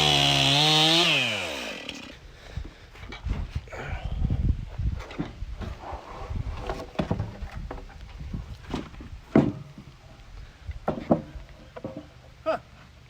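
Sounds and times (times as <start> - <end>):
wood and tools knocking: 8.7 - 9.9, 10.8 - 12.1.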